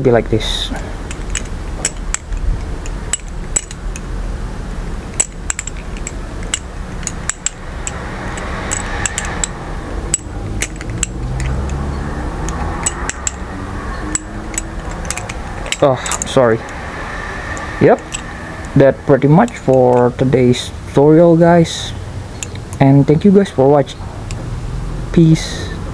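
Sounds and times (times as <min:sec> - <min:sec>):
butterfly knife handles clacking: 0:01.0 - 0:04.1, 0:05.1 - 0:16.8, 0:17.5 - 0:20.6, 0:22.3 - 0:24.5.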